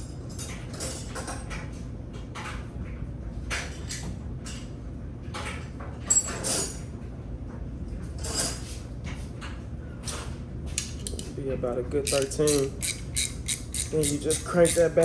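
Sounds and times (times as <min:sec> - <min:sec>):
metal hand tools clinking: 0:12.0 - 0:15.0.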